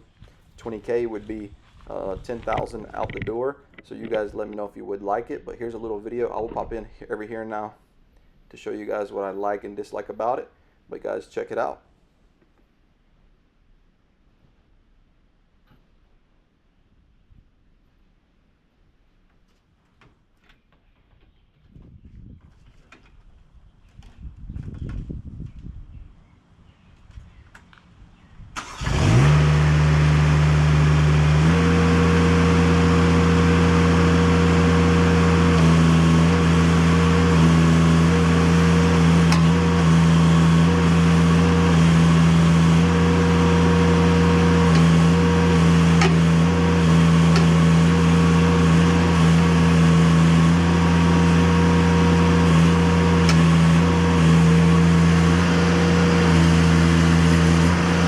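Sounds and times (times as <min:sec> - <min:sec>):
diesel engine running: 0:28.6 - 0:58.0.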